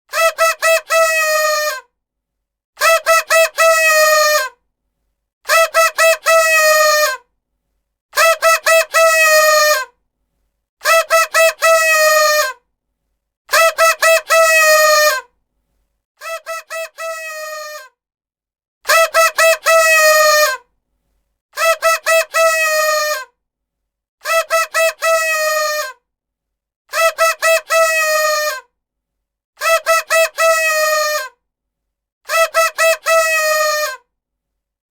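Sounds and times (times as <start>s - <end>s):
paper party horn toots: 24.2s - 25.9s, 29.6s - 31.3s, 32.3s - 34.0s.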